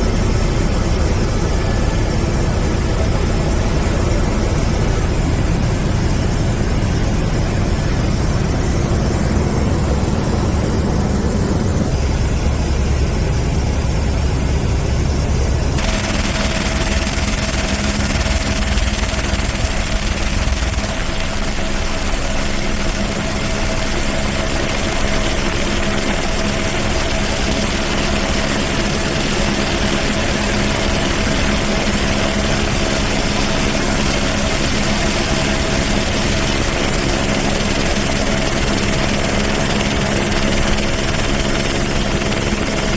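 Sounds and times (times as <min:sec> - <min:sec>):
engine running: 0:15.4 - 0:24.4.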